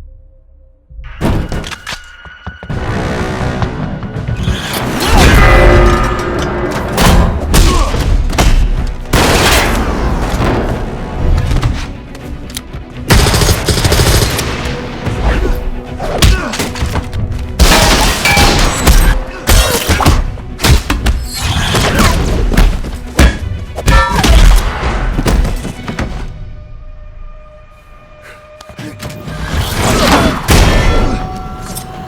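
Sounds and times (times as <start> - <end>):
film score music: 0.0 - 32.0
punches and heavy impacts: 6.8 - 11.8, 16.1 - 26.3.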